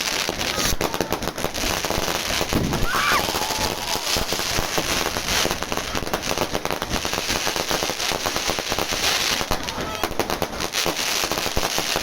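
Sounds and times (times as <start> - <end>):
fireworks crackling bursts: 0.0 - 12.0.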